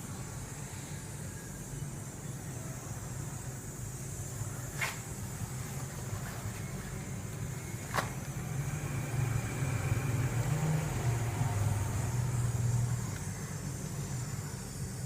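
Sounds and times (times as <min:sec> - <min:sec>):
vehicle engine humming: 0:03.8 - 0:15.0.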